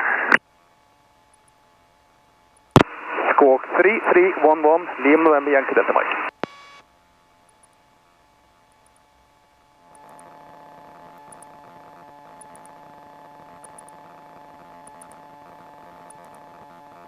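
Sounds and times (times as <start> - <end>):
faint electrical clicks: 1.3 - 1.6, 2.6 - 2.9, 6.3 - 6.8, 7.4 - 7.9, 8.7 - 9.1, 9.8 - 10.4, 11.0 - 17.0.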